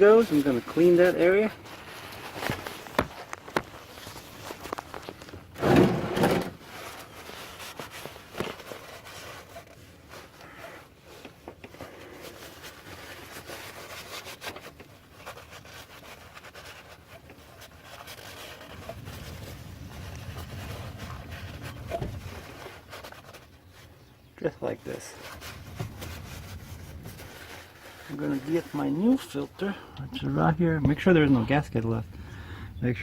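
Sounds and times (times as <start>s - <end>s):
thump and shuffle: 2.1s - 3.8s, 4.6s - 7.0s, 20.3s - 23.4s, 25.4s - 27.4s.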